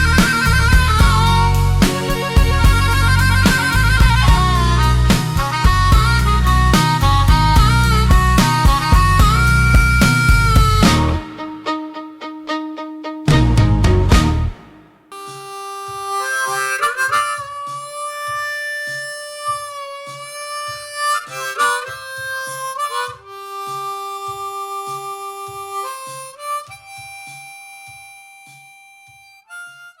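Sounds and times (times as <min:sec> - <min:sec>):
soft low beat: 0:00.0 - 0:12.0
harmonica playing: 0:00.0 - 0:30.0.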